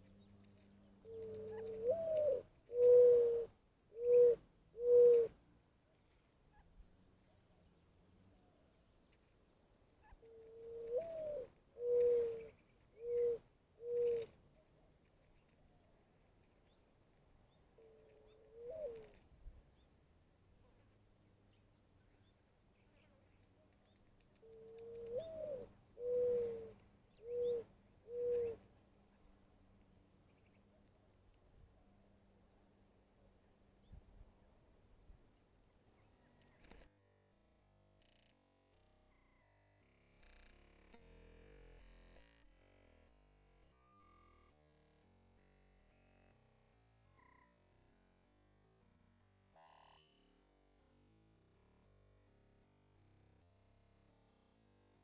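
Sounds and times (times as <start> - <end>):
dove cooing: 0.0 - 5.4, 10.0 - 14.4, 17.8 - 19.2, 24.3 - 28.8.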